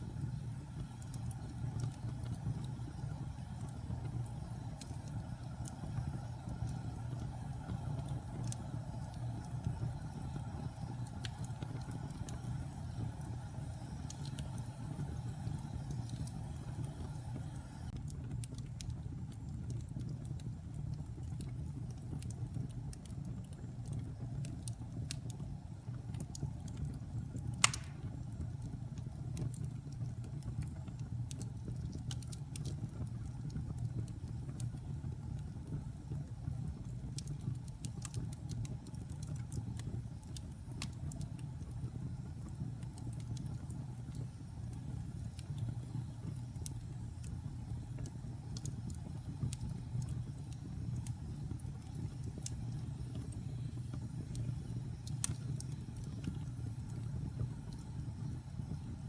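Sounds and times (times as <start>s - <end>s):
fire crackling in fireplace: 0.0s - 59.0s
fire pop: 27.4s - 29.5s.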